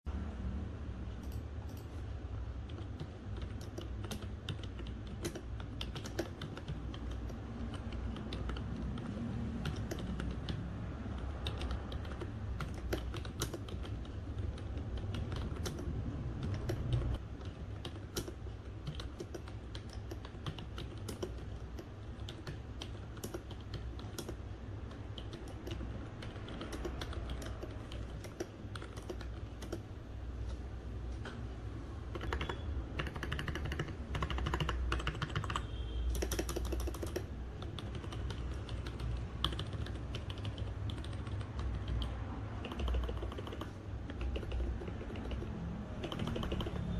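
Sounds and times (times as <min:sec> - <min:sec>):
keyboard key clicks: 0:11.2 - 0:24.4.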